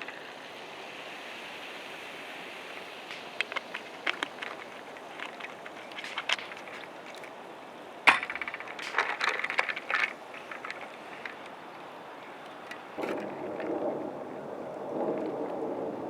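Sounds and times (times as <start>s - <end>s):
metal cookware clanking: 8.1s - 9.6s.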